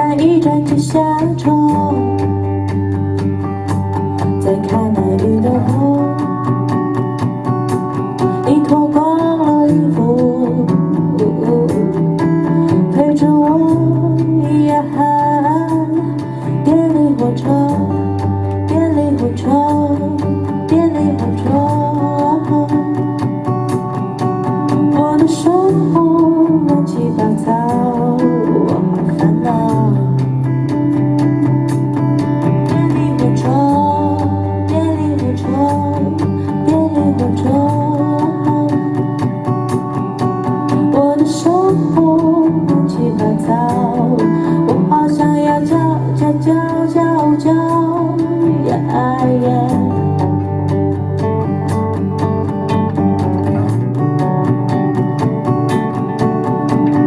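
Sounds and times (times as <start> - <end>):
person singing: 0.0 - 51.7
low bass notes: 0.0 - 57.0
plucked guitar: 0.0 - 57.0
sliding melody line: 25.3 - 30.5.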